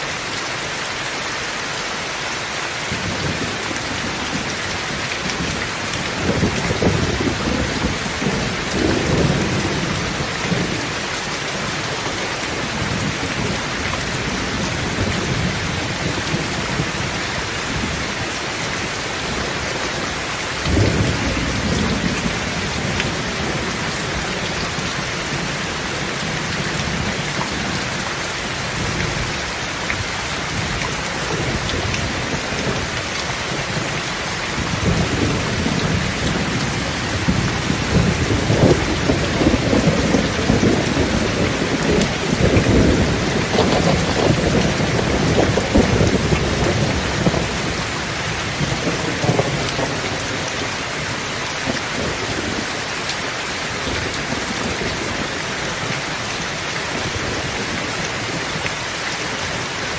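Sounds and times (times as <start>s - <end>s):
heavy rain: 0.0s - 59.9s
rolling thunder: 3.0s - 11.0s, 20.6s - 28.0s, 34.5s - 50.6s
sharp thunderclap: 34.7s - 47.8s, 48.6s - 50.0s.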